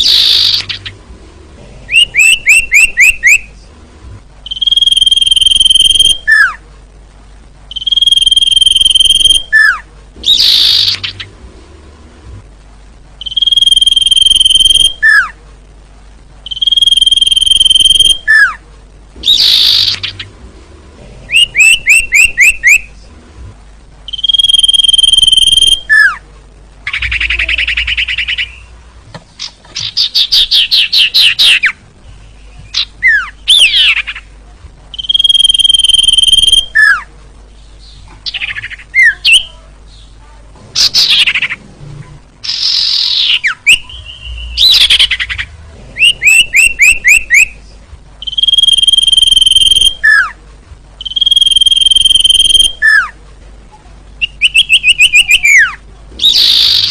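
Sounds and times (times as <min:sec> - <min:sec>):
bird whistling and trilling: 0:00.0 - 0:00.9, 0:01.9 - 0:03.5, 0:04.5 - 0:06.6, 0:07.7 - 0:11.2, 0:13.2 - 0:15.3, 0:16.5 - 0:18.6, 0:19.2 - 0:20.2, 0:21.3 - 0:22.8, 0:24.1 - 0:26.2, 0:32.7 - 0:34.1, 0:35.0 - 0:37.0, 0:42.4 - 0:47.6, 0:48.2 - 0:50.4, 0:51.0 - 0:53.1, 0:54.2 - 0:56.9
faint low hum: 0:00.0 - 0:56.9.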